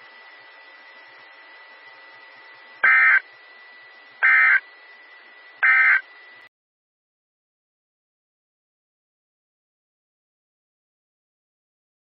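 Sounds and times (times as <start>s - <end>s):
radio hiss: 1.1s - 6.5s
loud data bursts: 2.8s - 3.3s, 4.2s - 4.7s, 5.6s - 6.5s.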